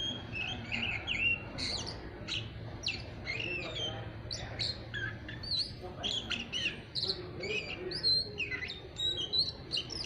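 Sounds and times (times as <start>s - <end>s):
bird singing chirps and whistles: 0.0s - 10.0s.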